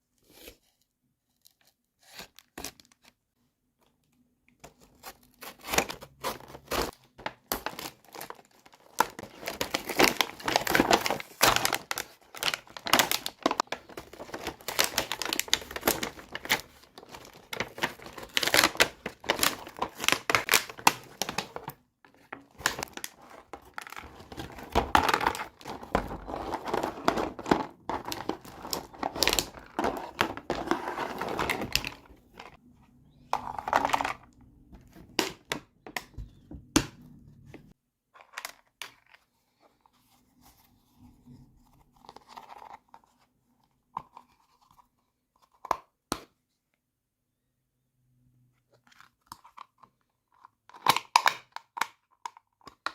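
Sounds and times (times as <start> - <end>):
plastic packaging crinkling: 5.2 - 32.6.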